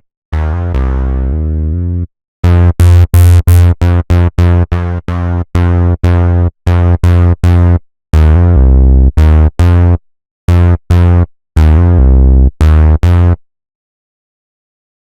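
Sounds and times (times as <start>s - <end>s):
staccato bass synthesizer: 0.3s - 13.4s.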